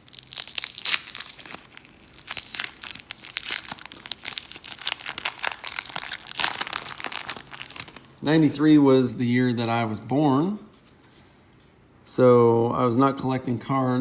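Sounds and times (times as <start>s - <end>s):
wrapper torn and crinkled: 0.0s - 8.5s.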